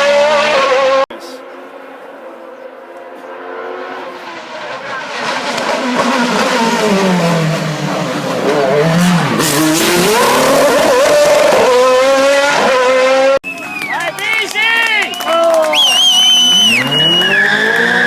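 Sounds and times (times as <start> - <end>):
race car engine revving: 0.0 - 1.1, 3.1 - 13.5, 16.0 - 18.0.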